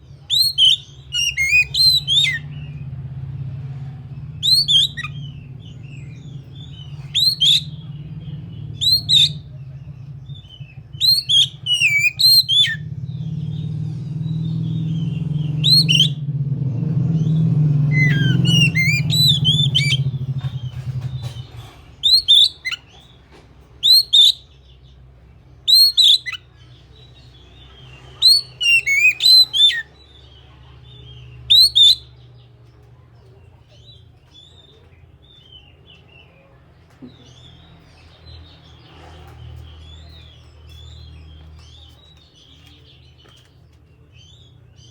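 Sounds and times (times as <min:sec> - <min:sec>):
bird twittering warble: 0:00.0 - 0:23.2, 0:23.8 - 0:24.9, 0:25.6 - 0:32.4
bird singing whistled phrases: 0:00.3 - 0:02.5, 0:04.4 - 0:07.8, 0:08.8 - 0:09.4, 0:11.0 - 0:12.8, 0:14.9 - 0:16.2, 0:17.9 - 0:20.1, 0:22.0 - 0:22.9, 0:23.8 - 0:24.5, 0:25.7 - 0:26.4, 0:28.2 - 0:30.1, 0:31.5 - 0:32.1.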